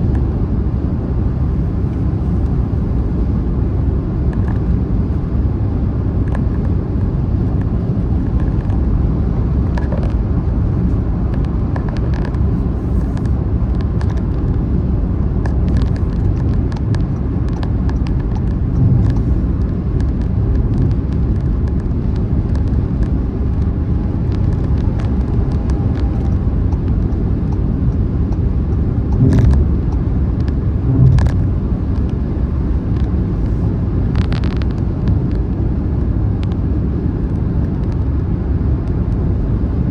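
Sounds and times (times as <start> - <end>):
road and tyre rumble: 0.0 - 39.9
car bumps: 18.7 - 19.6, 29.2 - 30.0, 30.8 - 32.2.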